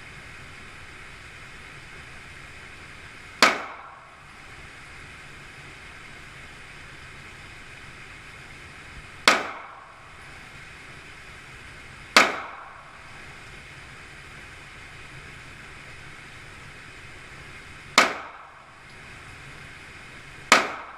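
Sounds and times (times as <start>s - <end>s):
pistol shots with echo: 3.4s - 4.1s, 9.3s - 10.0s, 12.2s - 13.0s, 18.0s - 18.6s, 20.5s - 20.9s.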